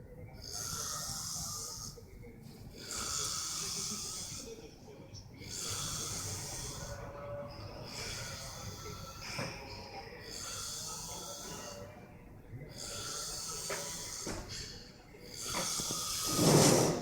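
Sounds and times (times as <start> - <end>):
person snoring: 12.7 - 14.3, 15.3 - 17.0.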